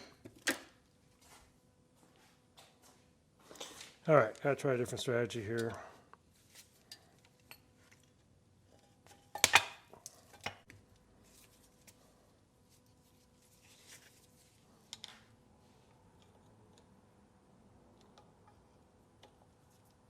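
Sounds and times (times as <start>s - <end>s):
light metal clicks of pliers: 5.6s - 5.8s.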